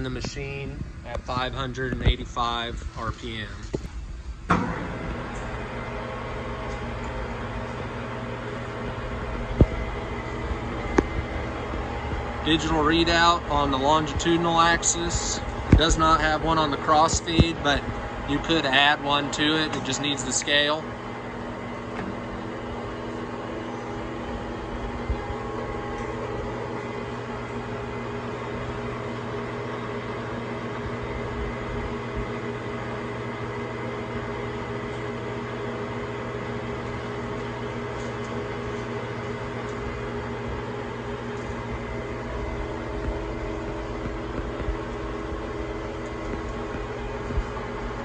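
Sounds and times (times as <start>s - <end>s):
lathe motor and gears humming: 0.0s - 48.0s.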